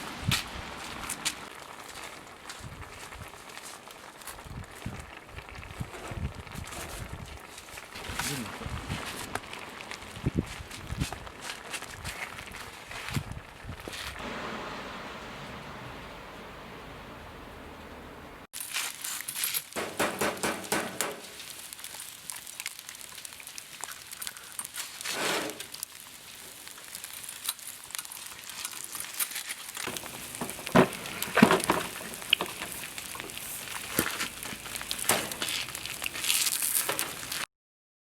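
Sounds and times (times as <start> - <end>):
food sizzling over campfire: 0.0 - 37.5
steady hiss: 14.2 - 18.5, 29.9 - 37.4
rustling: 23.8 - 37.5.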